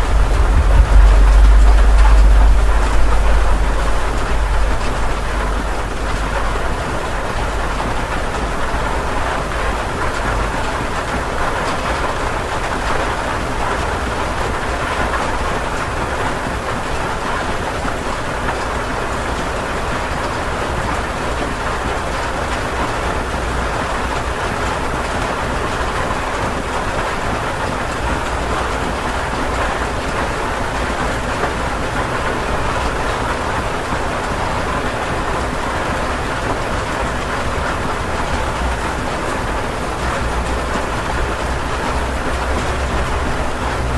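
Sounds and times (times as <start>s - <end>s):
low rumble: 0.0s - 10.5s, 37.2s - 43.9s
steady rain: 0.0s - 43.9s.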